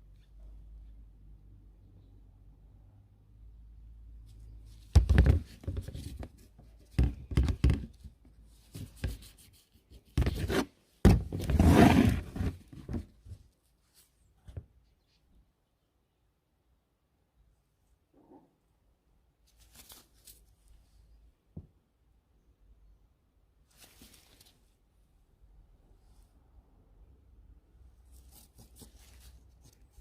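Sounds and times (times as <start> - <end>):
hard objects knocking and scraping: 4.9 - 8.1.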